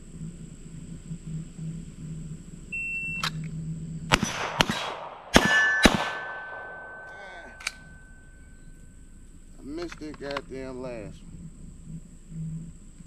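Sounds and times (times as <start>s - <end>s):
gunshots: 4.1s - 8.2s
steel plates ringing: 5.3s - 8.7s.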